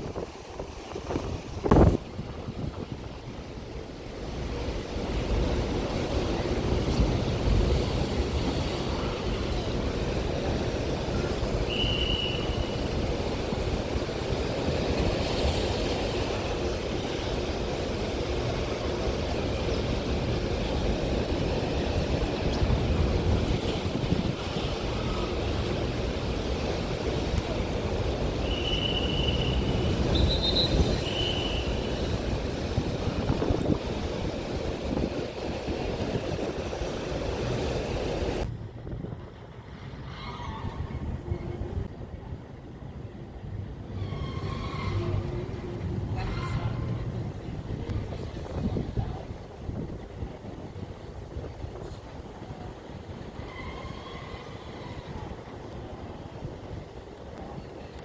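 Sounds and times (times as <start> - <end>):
wind rumble on microphone: 0.0 - 11.7, 12.4 - 28.4, 29.0 - 58.0
ocean waves surging: 0.0 - 38.6
short high squeaks: 44.0 - 45.4.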